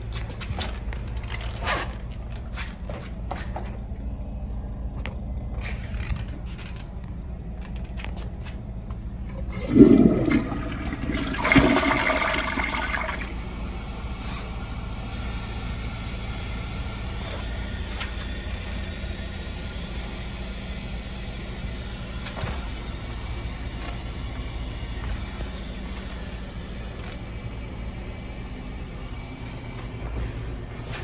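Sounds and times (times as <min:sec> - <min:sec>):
toilet flushing: 0:09.1 - 0:31.0
water draining bowl: 0:09.2 - 0:13.4
toilet tank refilling hiss: 0:09.3 - 0:28.4.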